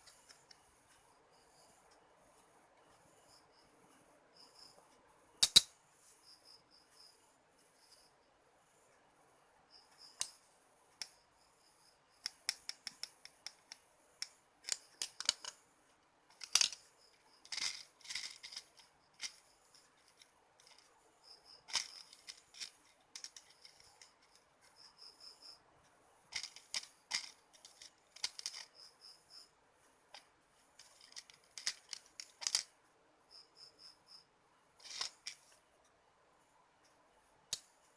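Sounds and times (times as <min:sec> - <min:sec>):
hand tools clicking and snipping: 0:05.4 - 0:05.7, 0:17.5 - 0:19.4, 0:21.7 - 0:24.4, 0:26.4 - 0:28.7, 0:30.8 - 0:32.6.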